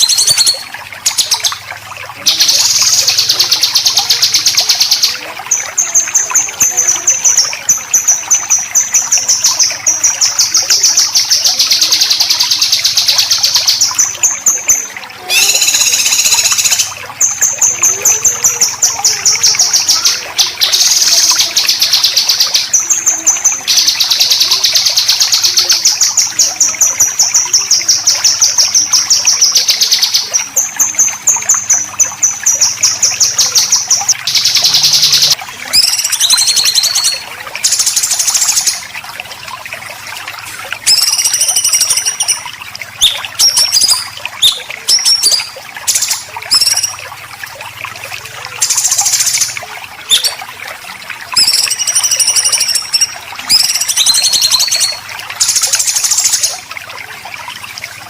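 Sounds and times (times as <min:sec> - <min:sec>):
songbird harsh trill: 0:15.3 - 0:16.9, 0:48.6 - 0:50.4.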